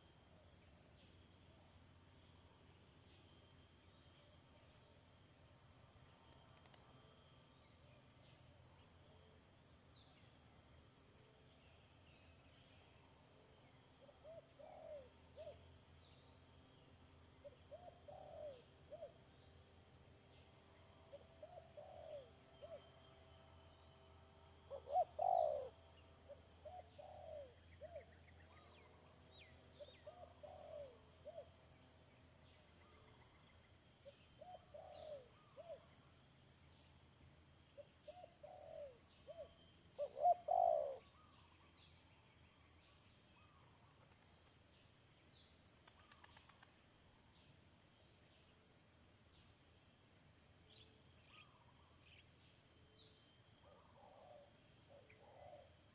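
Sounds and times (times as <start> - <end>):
high insect drone: 0.0 - 55.9
doves cooing: 24.7 - 25.7, 38.1 - 41.1.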